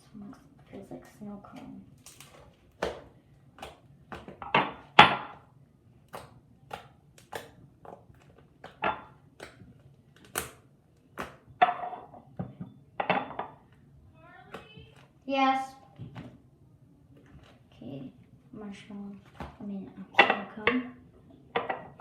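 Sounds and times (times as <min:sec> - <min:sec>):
slime squishing with clicks and pops: 0:06.0 - 0:11.5.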